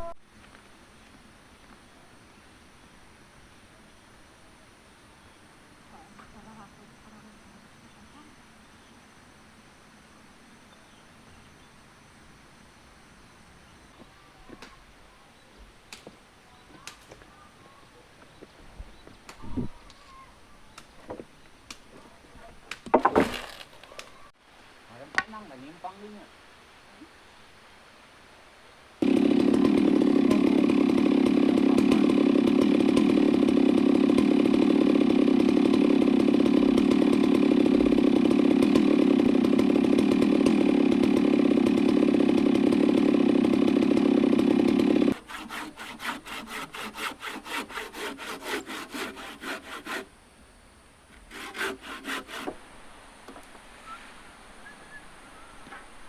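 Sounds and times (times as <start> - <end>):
chainsaw cutting wood: 22.7 - 24.1, 29.0 - 50.1, 51.1 - 52.6
hand saw strokes through wood: 29.0 - 50.1, 51.1 - 52.6.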